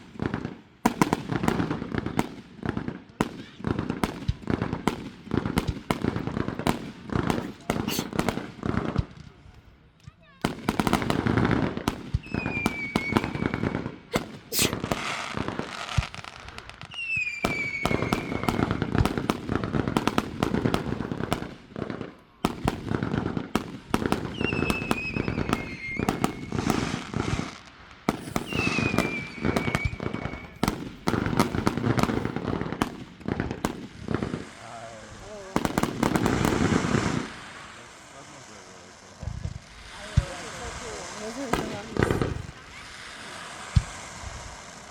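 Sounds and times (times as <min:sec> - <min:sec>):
fireworks bangs and crackling: 0:00.0 - 0:44.9
falling firework whistles: 0:07.3 - 0:08.4, 0:12.1 - 0:19.3, 0:24.0 - 0:32.5, 0:39.8 - 0:44.9.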